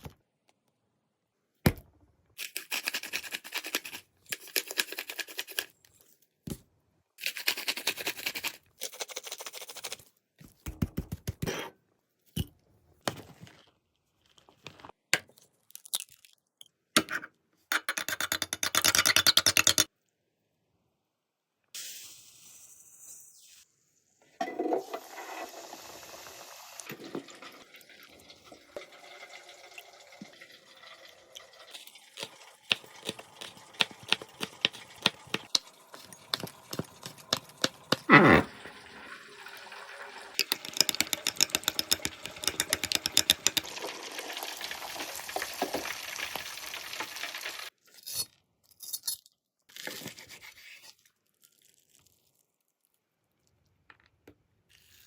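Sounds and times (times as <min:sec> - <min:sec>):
wet stirring: 0:31.4 - 0:38.1, 0:40.3 - 0:43.8
dense frying crackling: 0:42.1 - 0:47.7.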